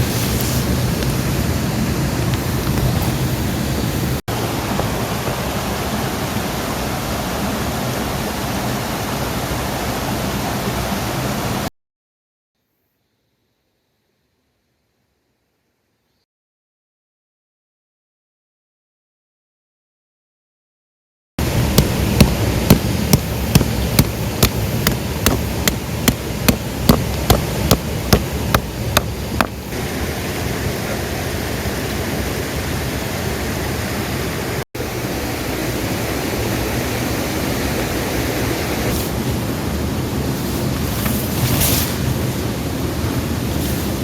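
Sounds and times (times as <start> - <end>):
steady rushing noise: 21.4 - 31.6
sharp knocks: 21.8 - 29.6.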